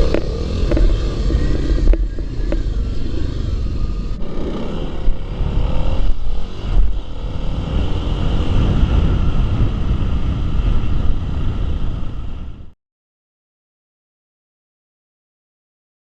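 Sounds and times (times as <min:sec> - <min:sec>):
dirt bike engine running: 0:00.0 - 0:11.0
heavy low rumble: 0:00.0 - 0:12.8.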